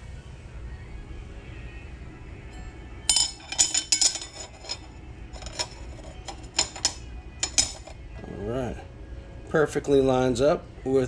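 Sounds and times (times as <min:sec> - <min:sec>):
metal sprocket clinking: 0:03.1 - 0:08.0.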